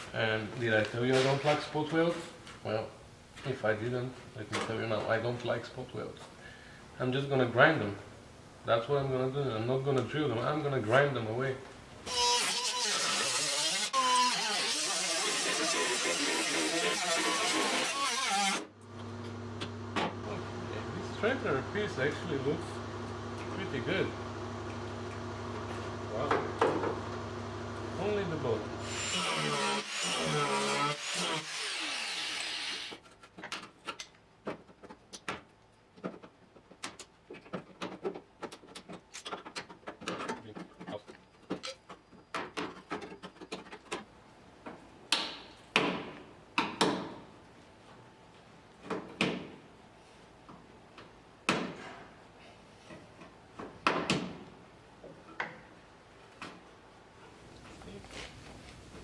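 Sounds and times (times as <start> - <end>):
power grinder grinding steel: 12.1 - 18.7, 28.8 - 32.9.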